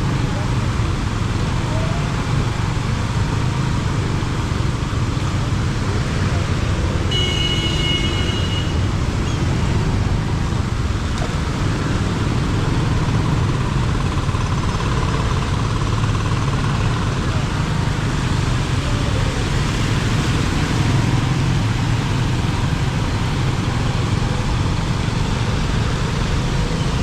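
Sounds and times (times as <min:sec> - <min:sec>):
road traffic noise: 0:00.0 - 0:27.0
vehicle horn: 0:07.1 - 0:08.9.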